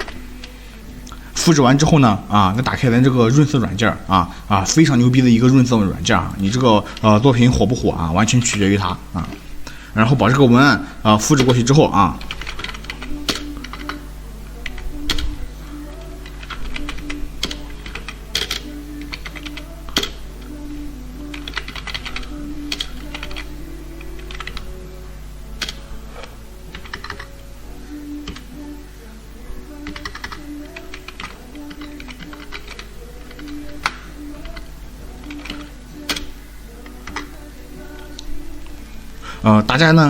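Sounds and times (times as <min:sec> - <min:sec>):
soft background music: 0:00.0 - 0:40.0
keyboard keys clicking: 0:11.3 - 0:14.0, 0:14.6 - 0:20.6, 0:21.2 - 0:24.8, 0:25.6 - 0:27.3, 0:29.7 - 0:38.3.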